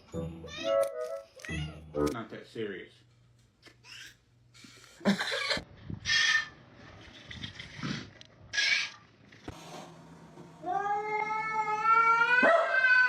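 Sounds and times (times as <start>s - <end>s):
animal making harsh sounds: 6.1s - 6.6s, 8.5s - 9.0s.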